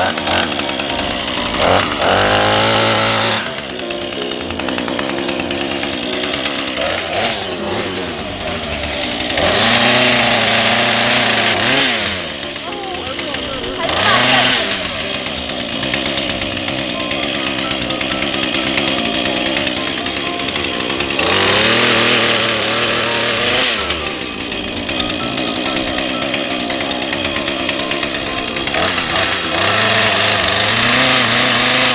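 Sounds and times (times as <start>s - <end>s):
chainsaw engine revving: 0.0s - 31.9s.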